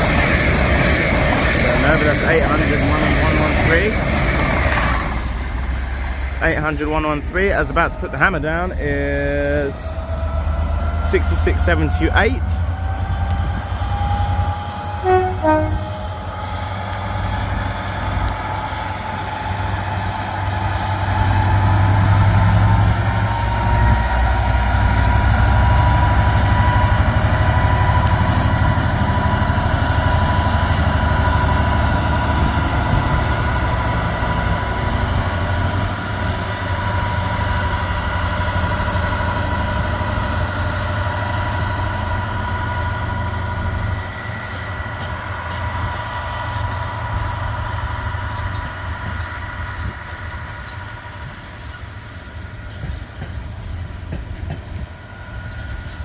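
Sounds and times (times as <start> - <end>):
diesel locomotive rumbling: 0.0 - 56.0
falling series of tones: 15.0 - 15.9.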